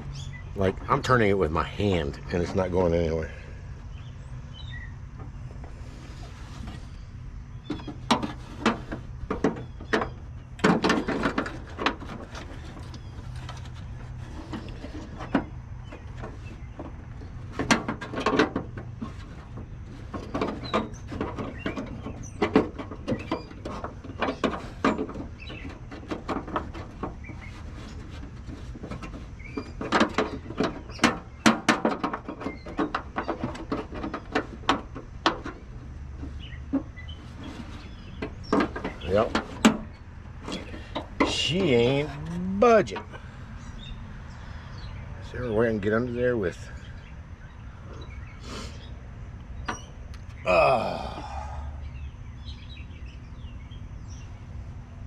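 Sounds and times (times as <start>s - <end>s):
plastic parts clicking and creaking: 7.6s - 44.4s.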